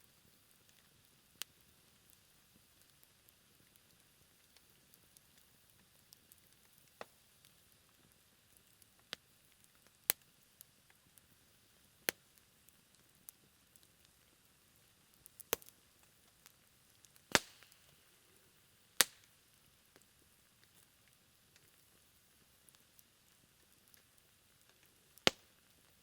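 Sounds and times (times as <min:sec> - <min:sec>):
campfire crackling: 0:00.0 - 0:26.0
fire pops: 0:00.2 - 0:26.0.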